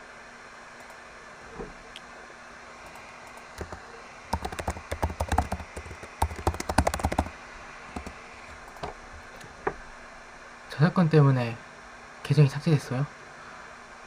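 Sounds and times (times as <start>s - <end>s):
computer keyboard typing: 2.9s - 7.3s, 7.9s - 9.5s.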